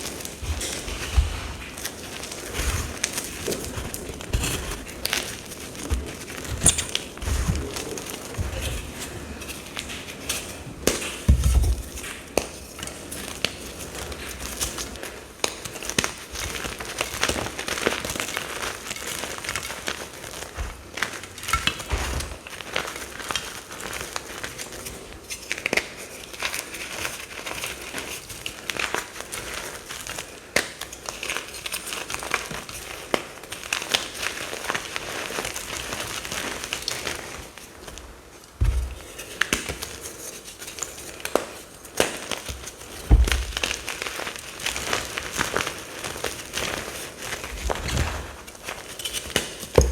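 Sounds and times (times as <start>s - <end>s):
powder bombs crunching and crumbling: 0.0s - 25.0s, 25.6s - 49.9s
dull thuds: 38.6s - 39.1s, 43.0s - 43.6s.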